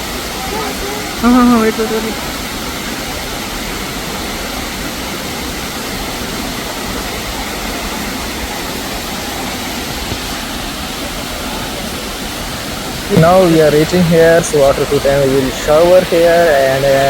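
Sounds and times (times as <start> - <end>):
waterfall rushing and splashing: 0.0 - 17.0.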